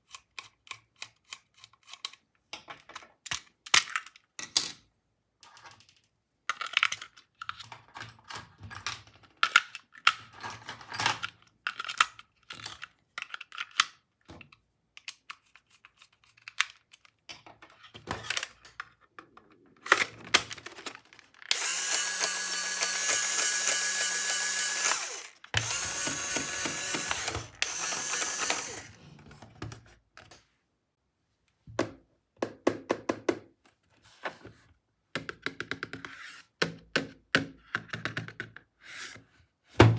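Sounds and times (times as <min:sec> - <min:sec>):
toy motor whining: 0:21.5 - 0:29.0.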